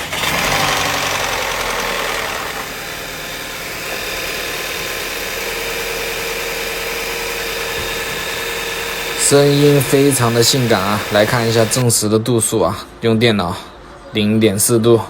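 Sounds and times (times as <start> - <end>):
car engine idling: 0.0 - 11.8.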